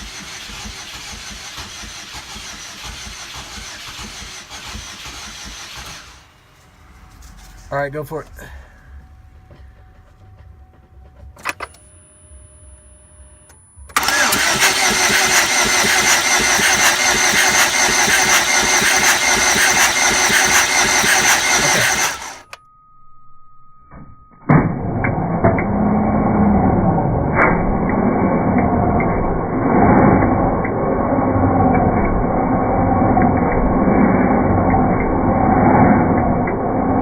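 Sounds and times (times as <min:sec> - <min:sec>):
engine cranking by starter: 0:00.0 - 0:06.4, 0:13.9 - 0:22.6, 0:24.7 - 0:37.0.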